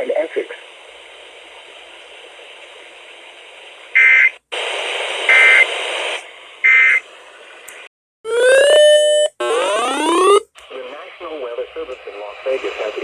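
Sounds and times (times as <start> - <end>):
alert data bursts: 8.3 - 10.4
rising sweeping tone: 8.3 - 10.4.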